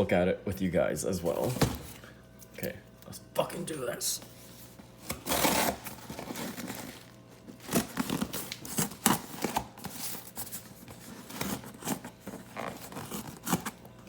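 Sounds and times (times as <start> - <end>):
packaging tearing and crinkling: 5.1 - 13.9.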